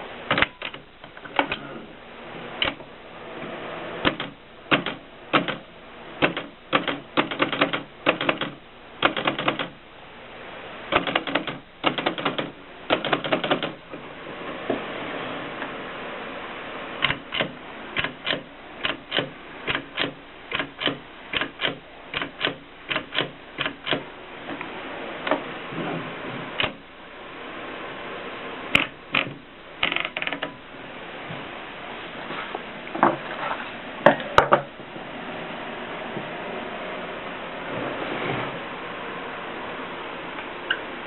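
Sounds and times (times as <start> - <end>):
typewriter clicking: 0.3 - 1.6, 2.6 - 2.8, 4.0 - 9.8, 10.9 - 13.8, 17.0 - 24.1, 26.6 - 26.8, 28.8 - 30.5.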